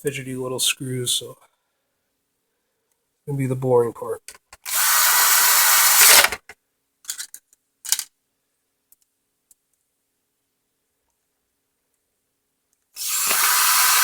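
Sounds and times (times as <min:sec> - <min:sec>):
power driver whirring: 0:04.6 - 0:06.4, 0:13.0 - 0:14.0.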